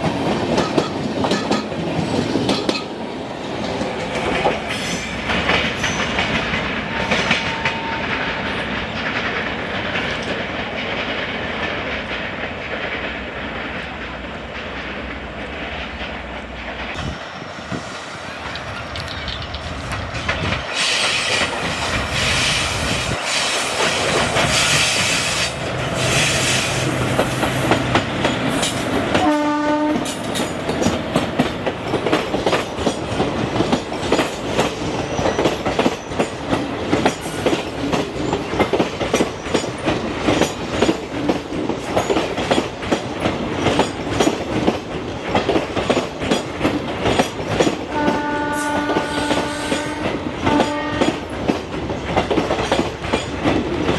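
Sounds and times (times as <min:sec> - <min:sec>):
train wheels clattering over rail joints: 0:00.0 - 0:53.9
locomotive horn: 0:06.9 - 0:08.7, 0:29.1 - 0:30.2, 0:47.9 - 0:51.2.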